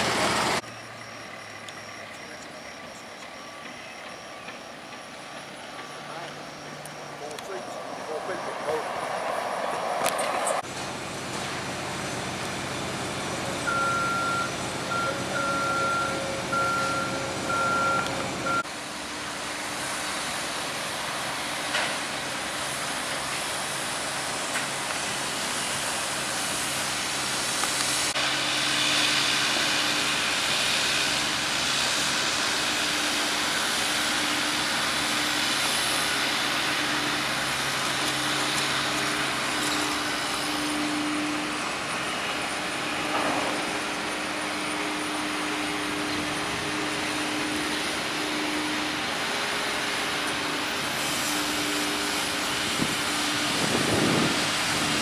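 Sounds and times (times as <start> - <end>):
heavy construction machinery running: 0.0 - 55.0
backup alarm beeps: 13.7 - 18.6
engine with pulsing hum: 39.2 - 55.0.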